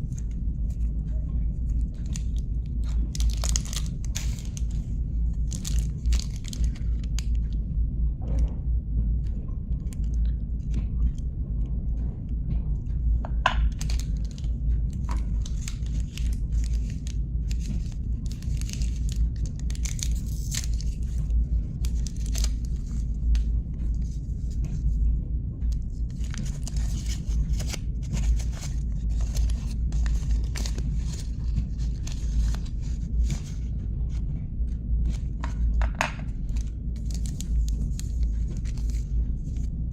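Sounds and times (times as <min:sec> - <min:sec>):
steady low hum: 0:00.0 - 0:39.9
wrappers tearing and crinkling: 0:02.0 - 0:04.8, 0:05.4 - 0:07.3, 0:13.7 - 0:14.5, 0:15.1 - 0:21.2, 0:21.8 - 0:23.0, 0:26.1 - 0:33.5, 0:36.5 - 0:39.0.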